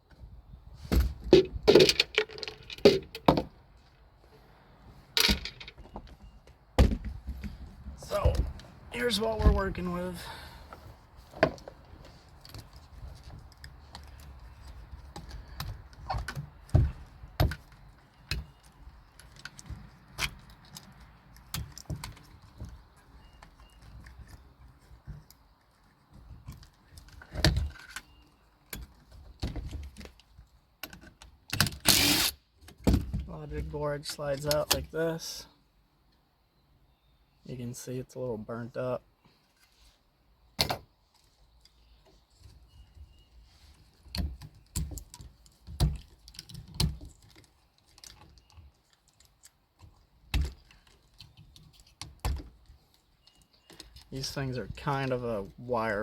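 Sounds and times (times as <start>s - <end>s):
knocks and clicks of plastic and metal: 0.9s - 3.5s, 44.1s - 48.7s
metal and plastic parts clattering: 1.0s - 3.5s, 5.2s - 6.3s.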